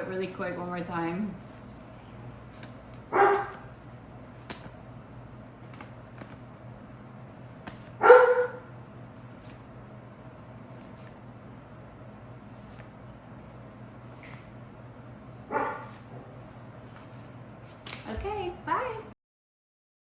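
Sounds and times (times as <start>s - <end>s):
trading cards clicking: 2.5s - 3.6s, 4.4s - 4.8s, 5.6s - 6.4s, 7.6s - 7.9s
dog barking sharply: 3.1s - 3.7s, 8.0s - 8.7s, 15.5s - 15.9s.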